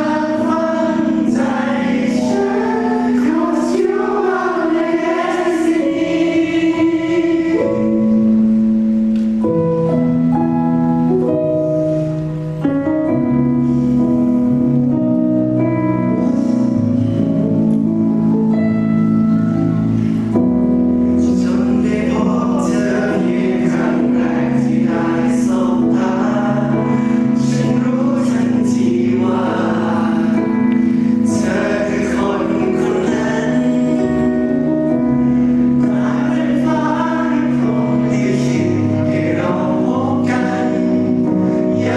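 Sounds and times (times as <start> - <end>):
voices singing long notes: 0.0 - 8.8, 21.1 - 41.9.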